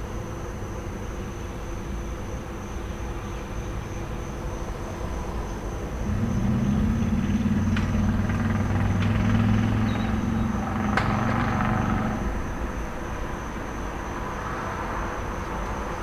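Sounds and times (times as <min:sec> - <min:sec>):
crickets chirping: 0:00.4 - 0:16.0
vehicle engine droning: 0:04.1 - 0:16.0.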